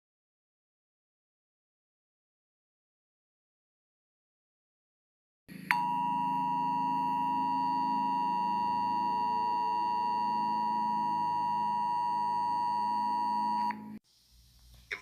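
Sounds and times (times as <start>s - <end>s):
two-tone alert signal: 5.7s - 13.9s.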